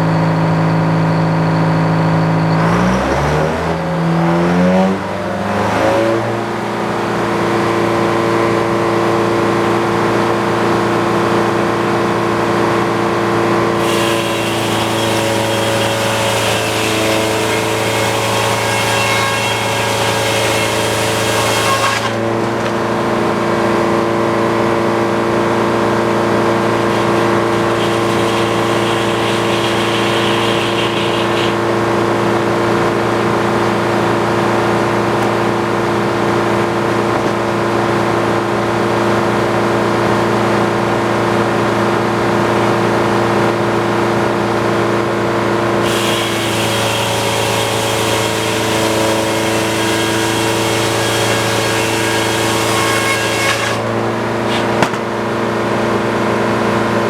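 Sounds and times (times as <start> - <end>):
sawmill engine running: 0.0 - 57.0
saw blade cutting log hiss: 13.8 - 18.0, 26.7 - 31.6.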